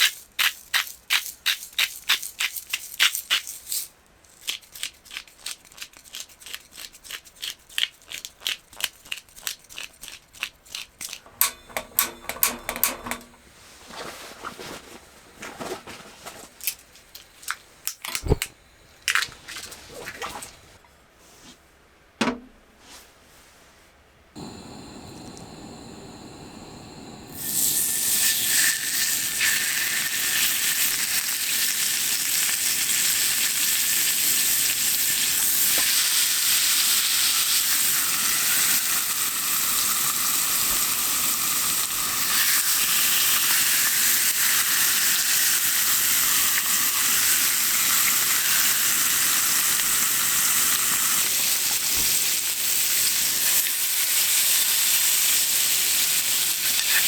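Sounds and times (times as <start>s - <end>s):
food sizzling in hot pan: 24.4s - 57.0s.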